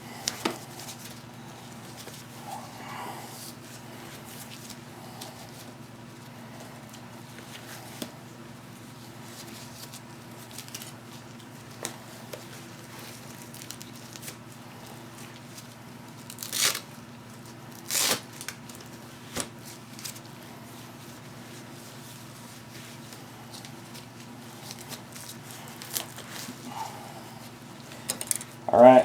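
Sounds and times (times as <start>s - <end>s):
steady low hum: 0.0s - 10.3s, 19.0s - 29.0s.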